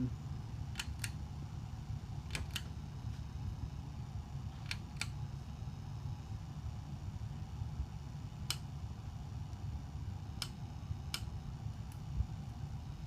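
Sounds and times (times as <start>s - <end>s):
low steady hum: 0.0s - 13.0s
ceiling fan switch clicks: 0.7s - 1.2s, 2.3s - 2.7s, 4.6s - 5.2s, 8.4s - 8.7s, 10.3s - 12.1s.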